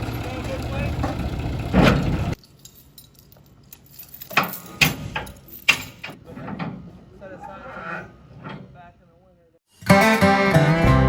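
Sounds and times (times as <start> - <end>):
engine running: 0.0 - 2.4
metal clinks and knocks: 2.3 - 6.8.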